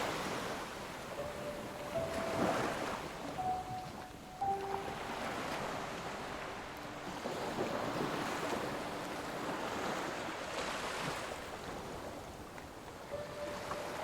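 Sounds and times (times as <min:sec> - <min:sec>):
ocean waves washing in: 0:00.0 - 0:14.0.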